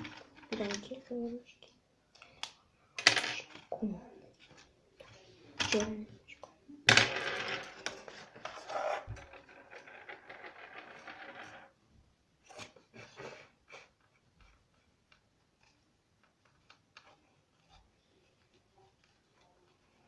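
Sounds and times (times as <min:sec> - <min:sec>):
faint taps and handling noises: 0:12.4 - 0:20.0.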